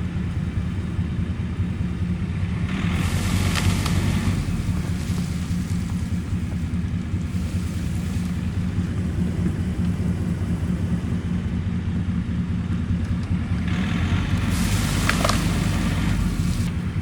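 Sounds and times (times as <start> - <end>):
tractor engine running: 0.0 - 17.0
hiss: 2.7 - 11.4, 14.1 - 17.0.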